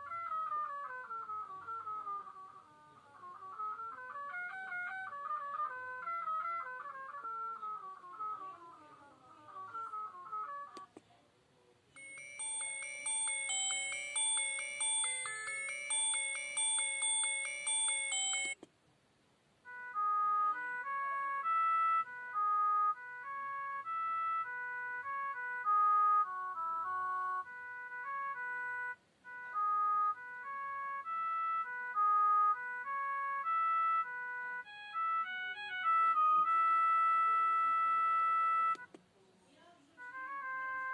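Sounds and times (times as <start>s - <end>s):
beeping phone ringtone melody: 0.0s - 10.9s, 12.0s - 18.6s, 19.7s - 38.9s, 40.1s - 40.9s
bright chime-like tone: 12.0s - 18.6s.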